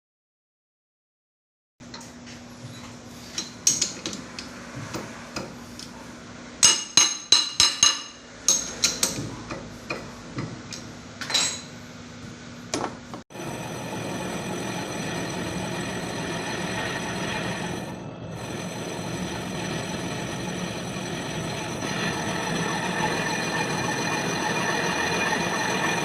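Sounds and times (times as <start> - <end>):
steady low hum: 8.1 - 26.0
machine running with high tones: 13.3 - 26.0.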